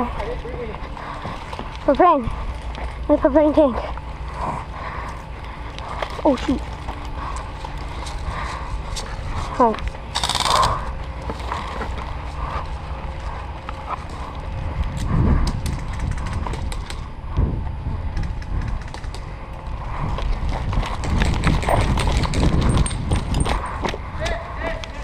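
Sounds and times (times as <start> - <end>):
footsteps: 3.7 - 10.0
wind on microphone: 14.4 - 24.2
jostling gear knocks and clicks: 20.1 - 24.0.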